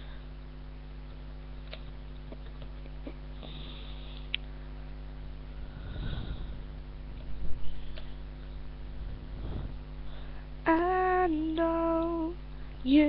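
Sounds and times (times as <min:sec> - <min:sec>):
low electrical hum: 0:00.0 - 0:13.0
breath close to microphone: 0:03.4 - 0:04.8, 0:05.5 - 0:06.7, 0:09.2 - 0:10.6.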